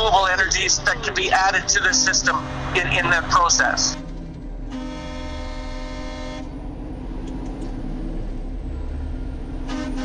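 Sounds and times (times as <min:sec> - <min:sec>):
truck engines rumbling: 0:00.0 - 0:10.0
truck air horn: 0:04.7 - 0:06.6, 0:09.7 - 0:10.0.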